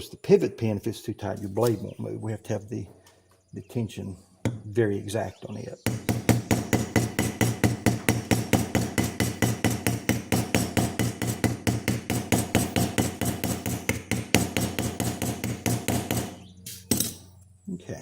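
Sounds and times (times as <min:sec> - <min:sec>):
small hammer tapping metal: 0:05.9 - 0:17.3.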